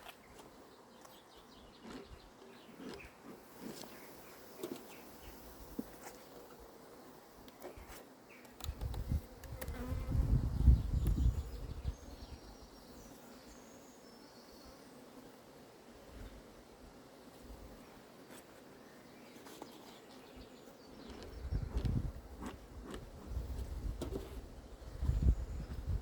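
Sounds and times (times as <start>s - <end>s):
honeybees buzzing: 0.2s - 26.0s.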